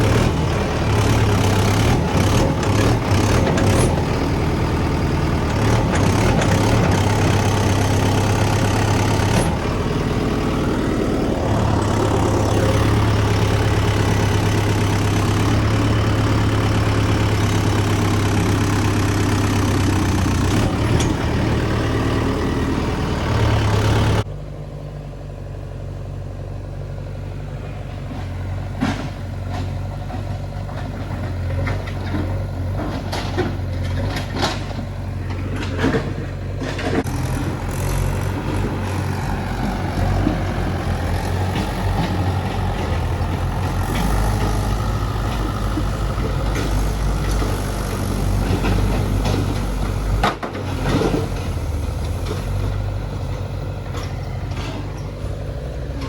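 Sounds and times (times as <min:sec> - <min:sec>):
diesel engine running: 0:00.0 - 0:56.0
knocks and clatters: 0:28.0 - 0:55.2.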